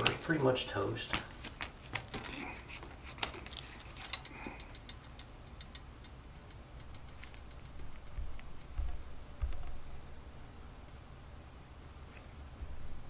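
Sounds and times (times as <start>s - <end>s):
faint light ticking: 4.1s - 9.8s
low hum: 4.2s - 13.0s
dull low thuds: 7.7s - 10.2s, 12.6s - 13.0s.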